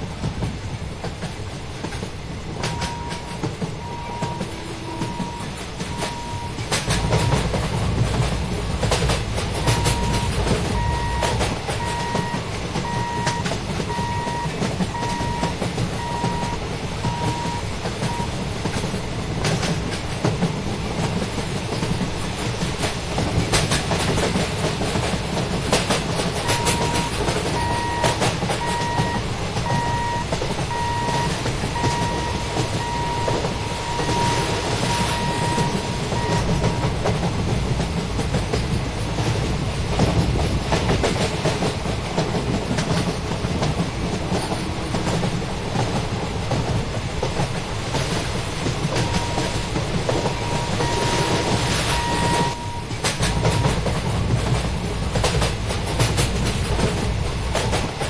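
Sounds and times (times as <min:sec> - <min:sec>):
train wheels rumbling on rail: 0:00.0 - 0:58.0
wheels clacking over rail joints: 0:00.2 - 0:58.0
high-pitched electronic beeps: 0:26.5 - 0:36.8.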